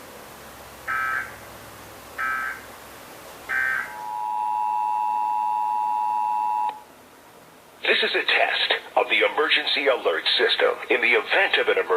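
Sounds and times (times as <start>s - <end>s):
two-tone attention signal: 0.9s - 1.4s, 2.2s - 2.6s, 3.5s - 6.8s.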